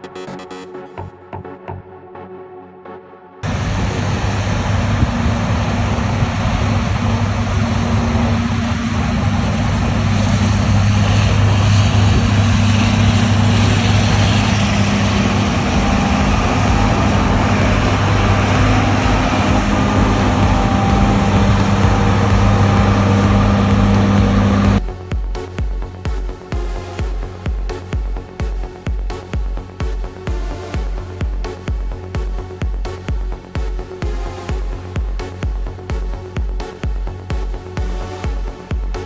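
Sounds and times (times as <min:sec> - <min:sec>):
combine harvester engine drone: 0:03.4 - 0:24.8
dense rushing noise: 0:03.4 - 0:24.9.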